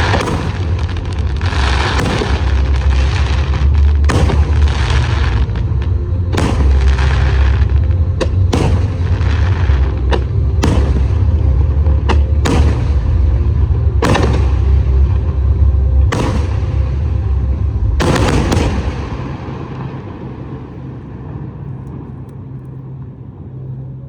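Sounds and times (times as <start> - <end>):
firework shells exploding: 0.0 - 5.7, 6.3 - 13.2, 14.0 - 14.8, 16.1 - 16.8, 18.0 - 19.3
rolling rumble of echo: 0.0 - 24.0.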